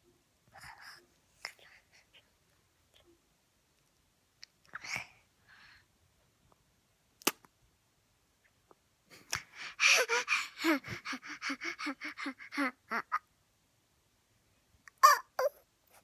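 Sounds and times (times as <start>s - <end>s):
toddler making repeated sounds: 14.9s - 16.0s.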